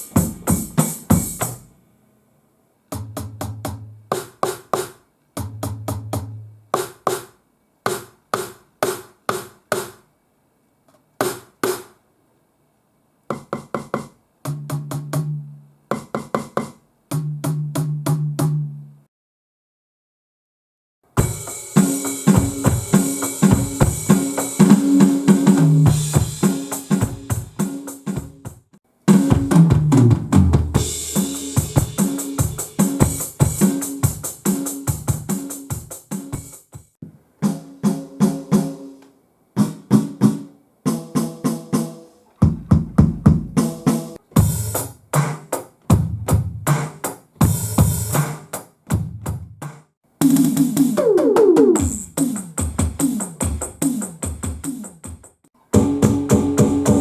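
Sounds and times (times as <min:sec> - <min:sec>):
electronic drum grooves: 0:00.0 - 0:01.7, 0:13.3 - 0:18.5, 0:21.2 - 0:38.8, 0:39.6 - 0:49.6, 0:50.2 - 0:57.0.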